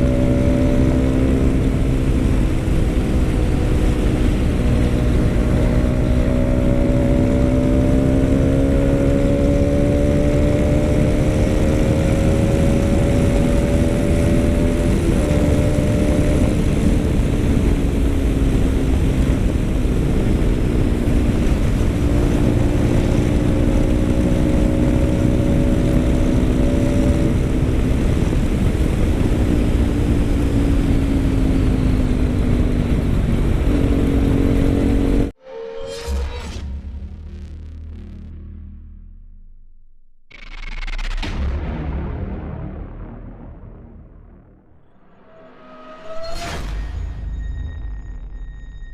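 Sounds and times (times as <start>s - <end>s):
motorcycle engine running: 0.0s - 35.3s.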